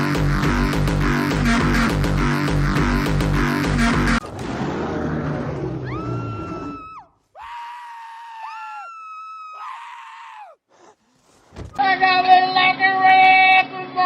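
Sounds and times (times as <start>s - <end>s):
burst of loud noise: 4.2s - 6.8s
high-pitched held screams: 5.8s - 10.6s.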